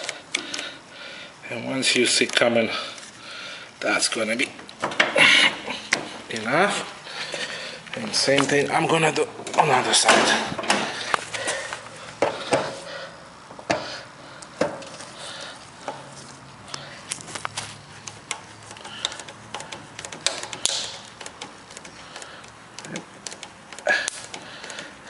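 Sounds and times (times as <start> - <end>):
grease gun clicking: 18.0 - 24.9.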